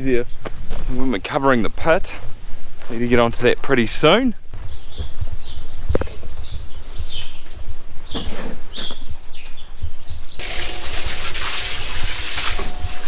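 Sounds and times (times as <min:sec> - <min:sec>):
small birds chirping: 0:00.0 - 0:01.7, 0:04.5 - 0:10.4.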